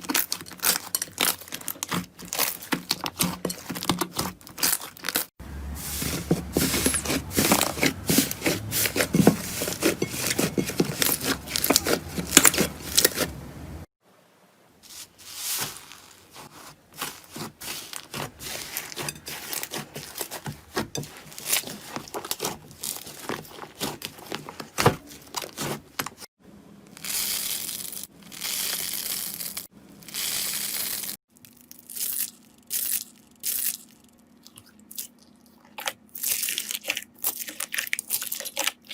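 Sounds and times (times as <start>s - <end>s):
slime crackling and popping: 0.0s - 5.3s.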